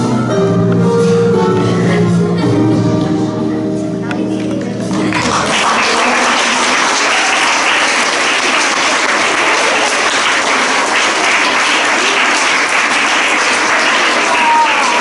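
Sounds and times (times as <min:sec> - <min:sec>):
large audience applauding: 0:04.9 - 0:15.0.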